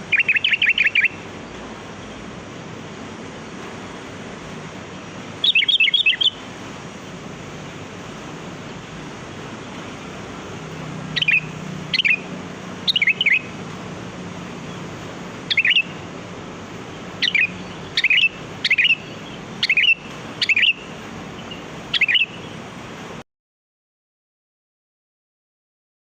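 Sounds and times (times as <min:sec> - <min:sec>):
bulbul calling: 0:00.0 - 0:02.2, 0:04.8 - 0:06.6, 0:08.6 - 0:22.7
steady background hiss: 0:00.0 - 0:23.2.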